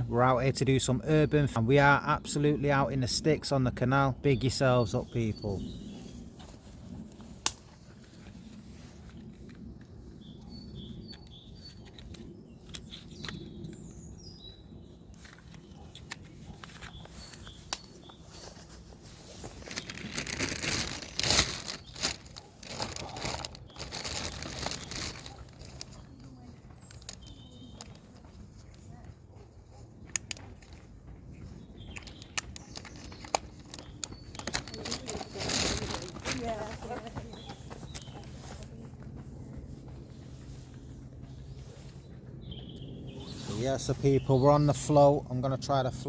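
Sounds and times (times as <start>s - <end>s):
rustling and handling noises: 4.9s - 42.2s
bird chirps: 10.0s - 18.8s, 31.4s - 35.9s.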